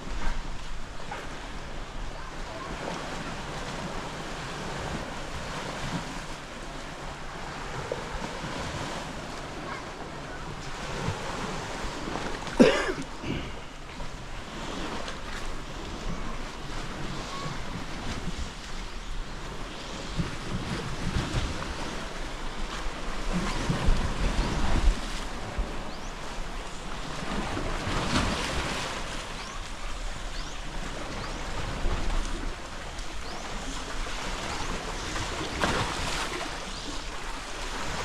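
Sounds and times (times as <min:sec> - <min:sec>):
surf washing on sand: 0:00.0 - 0:38.0
wind buffeting microphone: 0:13.4 - 0:36.1.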